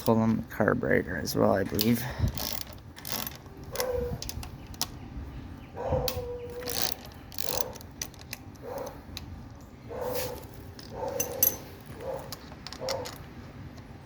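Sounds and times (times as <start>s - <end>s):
ratchet wrench clicking: 2.3s - 4.9s, 6.6s - 8.4s.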